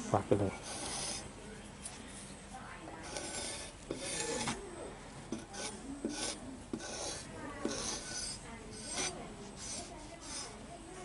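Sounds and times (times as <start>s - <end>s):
hand file rasping on metal: 0.5s - 1.2s, 3.0s - 4.6s, 5.3s - 10.6s.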